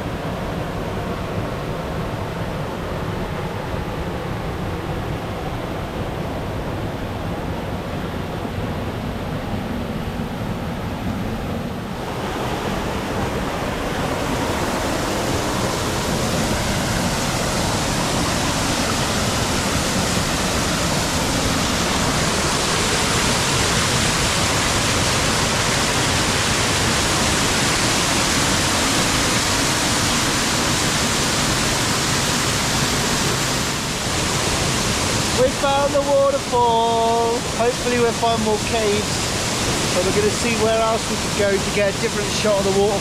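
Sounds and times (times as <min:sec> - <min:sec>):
waterfall rushing: 0:11.8 - 0:43.0.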